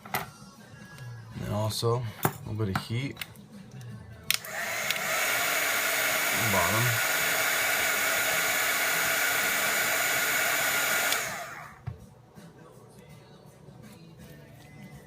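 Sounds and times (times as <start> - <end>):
heat gun blowing hot air: 4.4 - 11.8.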